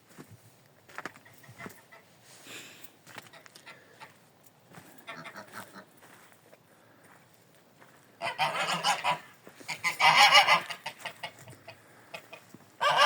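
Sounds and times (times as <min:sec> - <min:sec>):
geese honking: 0:05.0 - 0:05.9, 0:08.2 - 0:13.0.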